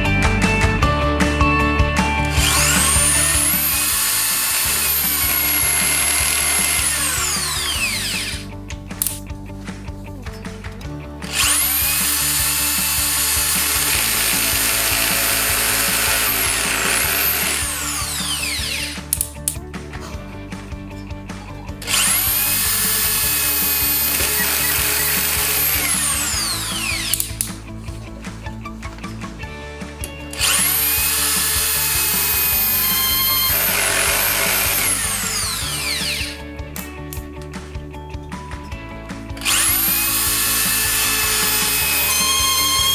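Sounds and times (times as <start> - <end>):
background music: 0.0 - 42.9
drill motor whining: 2.2 - 8.4, 11.3 - 19.0, 21.9 - 27.4, 30.3 - 36.4, 39.4 - 42.9.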